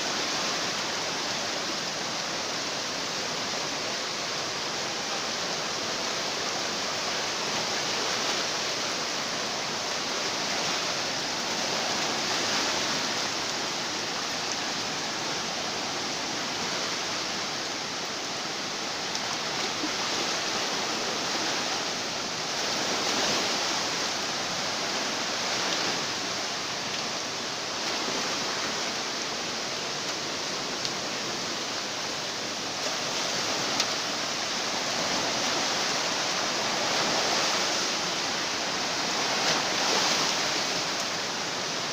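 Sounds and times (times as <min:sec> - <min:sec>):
rushing floodwater: 0:00.0 - 0:41.9.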